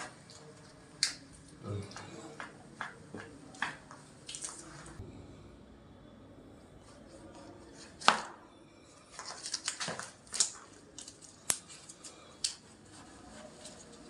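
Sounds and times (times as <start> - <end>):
rustling: 9.0 - 14.0.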